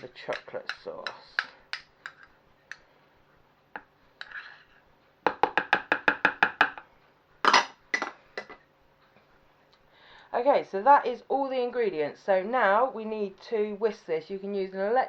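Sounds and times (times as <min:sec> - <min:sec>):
spoon knocking against a bowl: 0:05.3 - 0:06.8.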